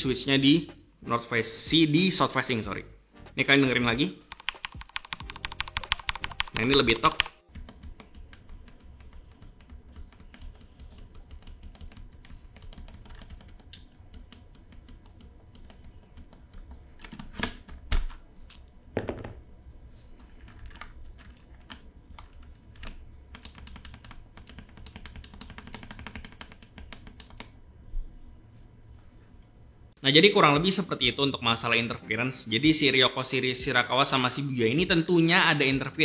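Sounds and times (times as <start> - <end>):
typing on mechanical keyboard: 4.3 - 18.2, 20.4 - 27.5.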